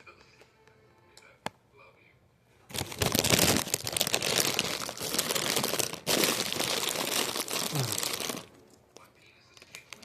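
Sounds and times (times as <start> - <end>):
plastic snack bag crinkling: 2.7 - 10.0.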